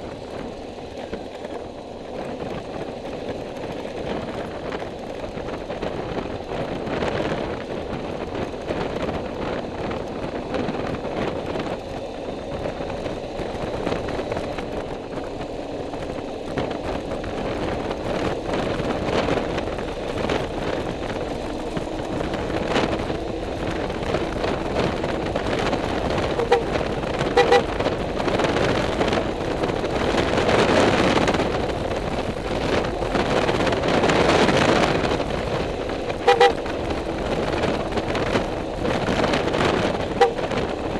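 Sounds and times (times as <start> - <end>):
road and wind noise: 0.0 - 40.9
short horn toots: 26.4 - 27.7, 36.2 - 36.6, 40.1 - 40.6.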